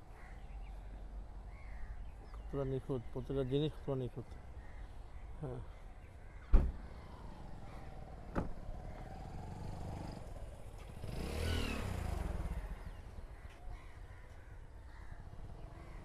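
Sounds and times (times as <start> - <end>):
low rumble of traffic: 0.0 - 16.0
vehicle passing by: 6.8 - 13.2.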